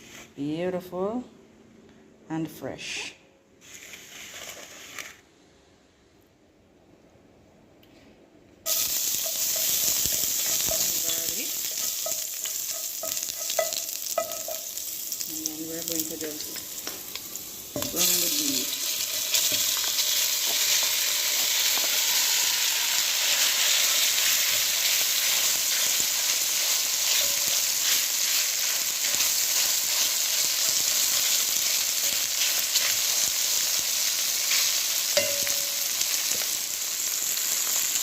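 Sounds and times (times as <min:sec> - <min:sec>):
beef sizzling in hot oil: 0:08.7 - 0:38.0.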